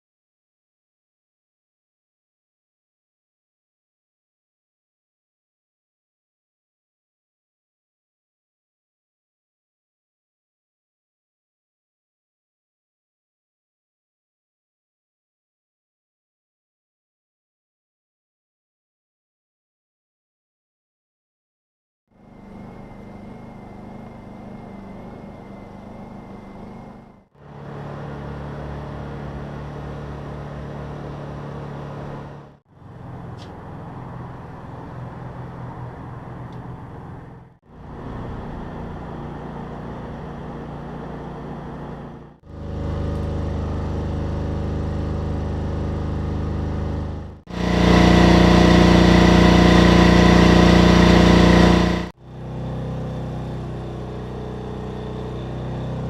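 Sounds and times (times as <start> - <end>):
generator engine hum: 22.1 - 56.0
heavy low generator drone: 22.1 - 56.0.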